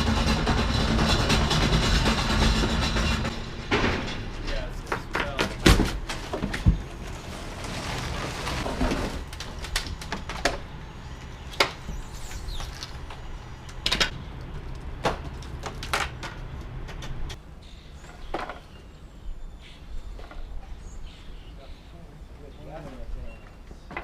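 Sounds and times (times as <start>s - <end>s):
sharp knocks and clunks: 0.2s - 7.2s.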